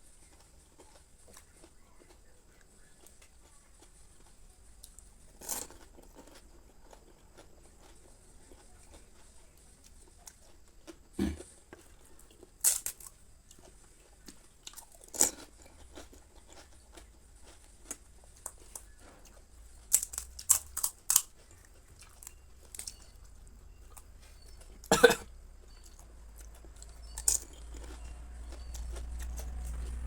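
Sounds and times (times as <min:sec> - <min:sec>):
crisp shells crunching: 0:12.6 - 0:13.1, 0:19.8 - 0:21.5.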